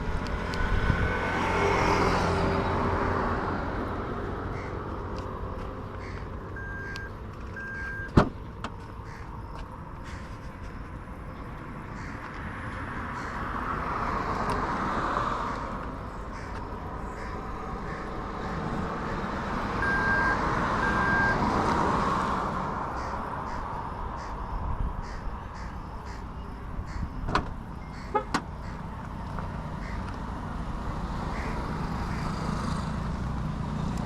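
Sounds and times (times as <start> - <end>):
vehicles passing: 0.0 - 34.0
short electronic beeps: 6.6 - 8.2, 19.8 - 21.4.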